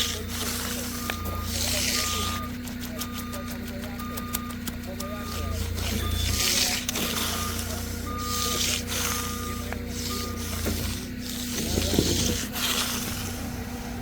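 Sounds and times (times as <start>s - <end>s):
reversing alarm beeps: 0.0s - 12.2s
heavy truck engine running: 0.0s - 14.0s.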